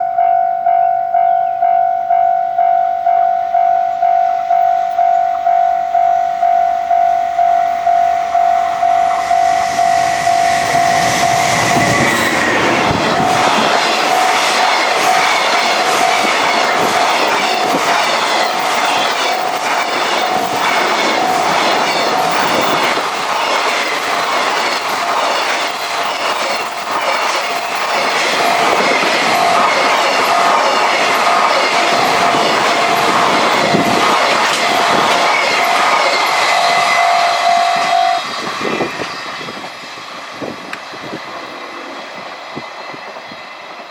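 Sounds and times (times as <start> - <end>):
level crossing alarm ringing: 0.0 - 39.5
train wheels clattering over rail joints: 11.2 - 36.8.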